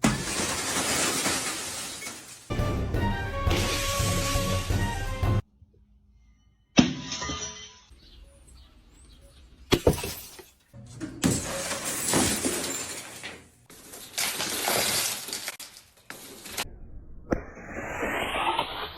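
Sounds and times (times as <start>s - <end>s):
glass shattering: 0.0s - 2.6s, 6.9s - 7.9s, 11.2s - 13.4s, 14.0s - 15.9s.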